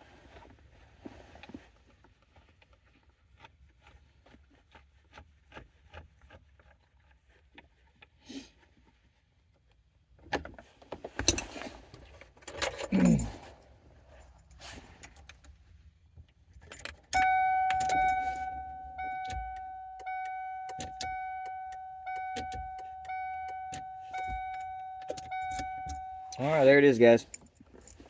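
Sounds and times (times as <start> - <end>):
keys jangling in ignition: 12.4 - 13.5, 16.6 - 28.0
car warning chime tone: 17.1 - 27.4.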